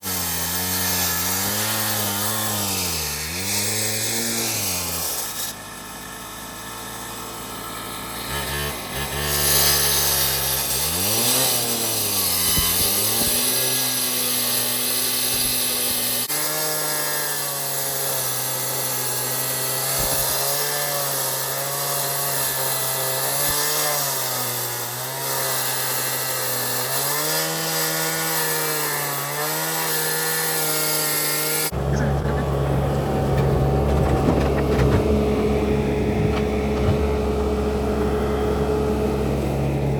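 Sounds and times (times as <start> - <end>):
heavy machinery engine bogging down: 31.8 - 39.9.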